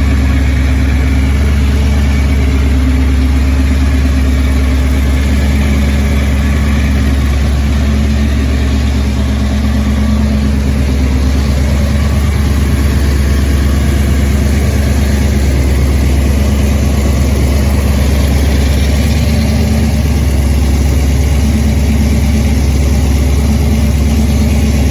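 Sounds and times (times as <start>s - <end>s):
engine idling: 0.0s - 24.9s.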